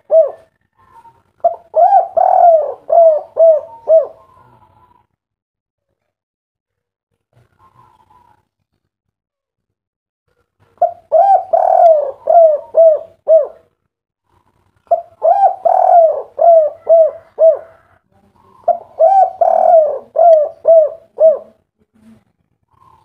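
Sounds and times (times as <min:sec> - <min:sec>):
dove cooing: 0:00.0 - 0:05.1, 0:07.5 - 0:08.4, 0:10.8 - 0:13.7, 0:14.3 - 0:21.6, 0:22.7 - 0:23.0.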